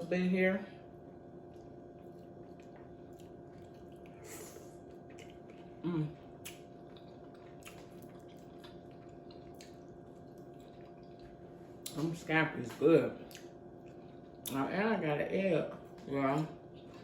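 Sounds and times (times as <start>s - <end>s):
wet chewing and smacking: 1.1s - 12.1s, 12.7s - 14.7s.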